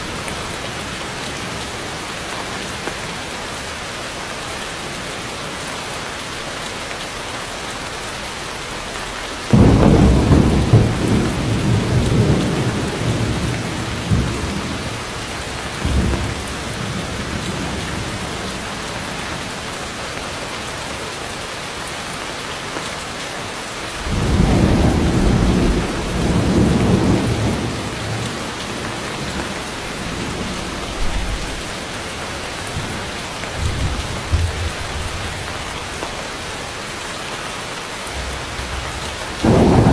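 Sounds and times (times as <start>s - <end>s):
heavy rain on foliage: 0.0s - 39.9s
thunder rolling: 9.5s - 19.5s, 24.0s - 36.2s, 38.1s - 39.9s.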